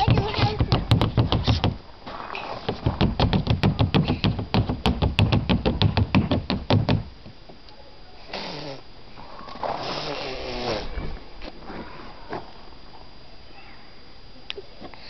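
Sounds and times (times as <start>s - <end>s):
tap dancing feet: 2.7s - 7.0s.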